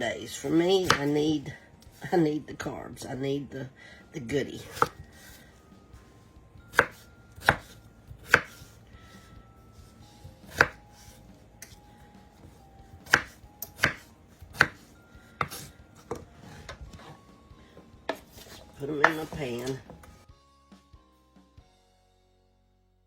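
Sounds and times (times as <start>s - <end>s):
knife chopping on cutting board: 0.8s - 1.2s, 4.7s - 5.0s, 6.7s - 8.8s, 10.4s - 11.8s, 13.0s - 17.2s.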